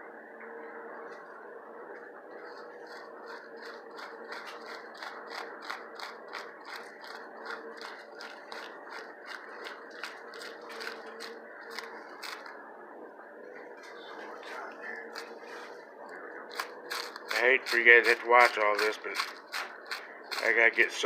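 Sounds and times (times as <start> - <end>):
sausage stuffer gears clicking: 16.5 - 21.0.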